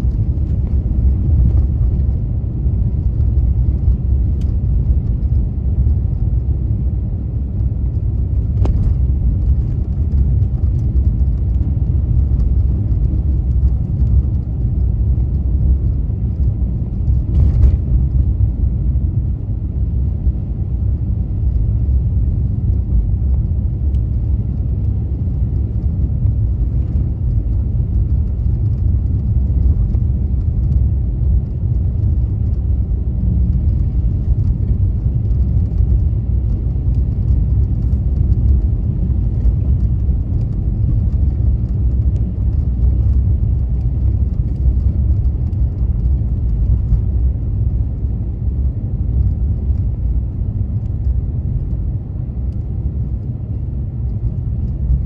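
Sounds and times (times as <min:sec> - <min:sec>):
car engine and tyres rumbling: 0:00.0 - 0:55.0
faint light ticks: 0:03.8 - 0:04.6.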